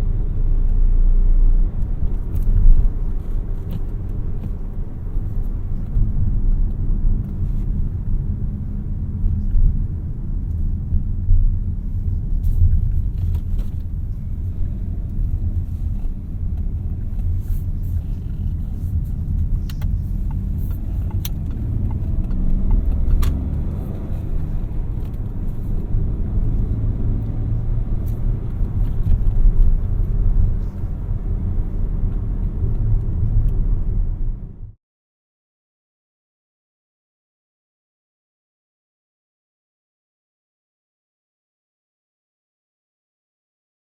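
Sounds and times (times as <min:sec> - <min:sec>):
car engine running: 0:00.0 - 0:34.6
road and tyre rumble: 0:00.0 - 0:34.8.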